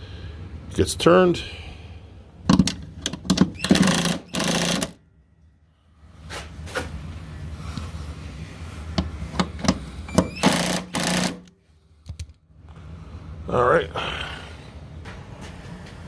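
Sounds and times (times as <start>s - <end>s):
impact driver rattling: 2.5s - 5.0s, 9.4s - 11.5s.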